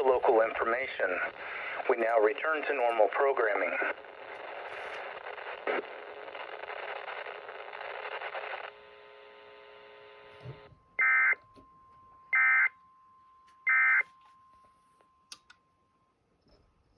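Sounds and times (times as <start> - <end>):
radio static hissing: 0.0 - 11.4
faint steady tone: 8.4 - 16.9.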